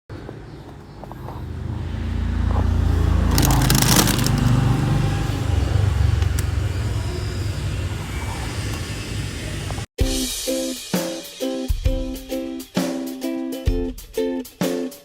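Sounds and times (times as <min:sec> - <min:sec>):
low drone: 0:01.0 - 0:09.9
crackling crash: 0:03.2 - 0:04.8.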